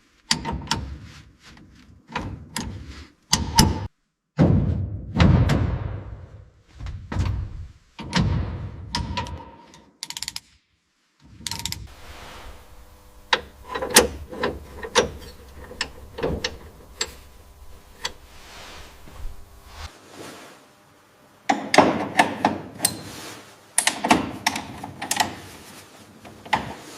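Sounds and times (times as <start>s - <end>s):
low steady hum: 11.3s - 26.9s.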